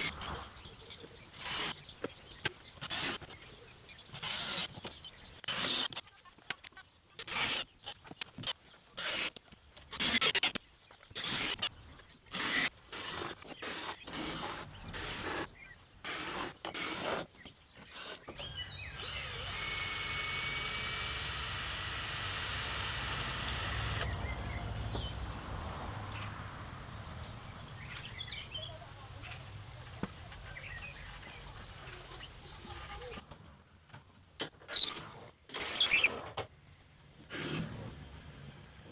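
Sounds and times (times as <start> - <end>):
birds chirping: 0.0 - 5.4, 17.3 - 33.2
power tool whining: 4.1 - 5.3, 18.0 - 33.2
low outdoor rumble: 21.5 - 33.2.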